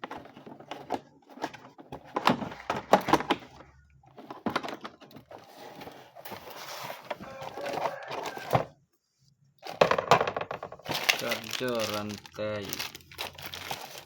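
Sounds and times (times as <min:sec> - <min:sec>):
box clicks and knocks: 0:00.0 - 0:03.6
packaging rustling: 0:04.2 - 0:08.6, 0:10.8 - 0:14.0.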